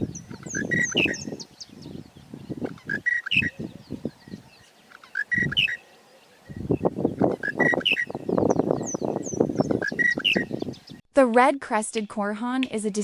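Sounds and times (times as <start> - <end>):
lark singing whistled phrase: 0.1 - 2.0, 2.9 - 4.4, 5.1 - 5.8, 7.4 - 11.0.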